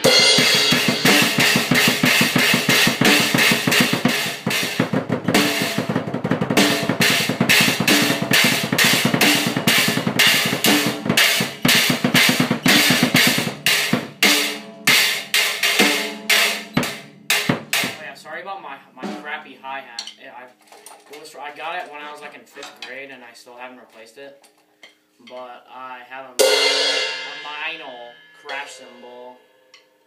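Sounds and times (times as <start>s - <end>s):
drum kit played fast: 0.0s - 18.4s, 19.0s - 20.1s, 26.2s - 29.1s.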